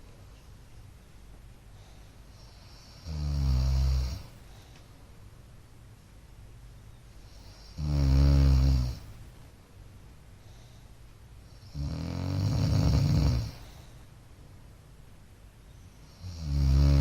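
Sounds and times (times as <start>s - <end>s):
man snoring: 2.8s - 4.3s, 7.6s - 9.1s, 11.6s - 13.7s, 16.2s - 17.0s.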